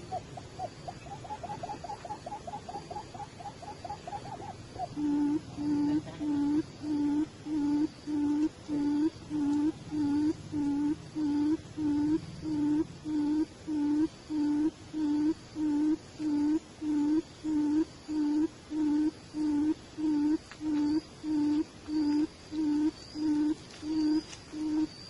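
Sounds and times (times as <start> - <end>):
bird hooting call: 0.0 - 25.0.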